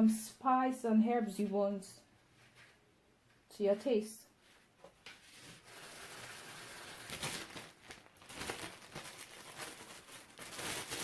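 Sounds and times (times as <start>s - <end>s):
rustling and crinkling handling noise: 4.4s - 11.0s.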